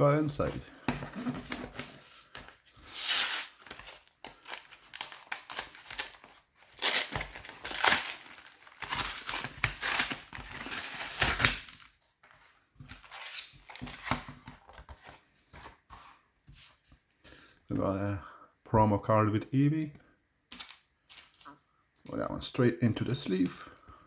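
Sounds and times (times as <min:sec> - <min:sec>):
blister pack tearing and crinkling: 0:01.8 - 0:11.9.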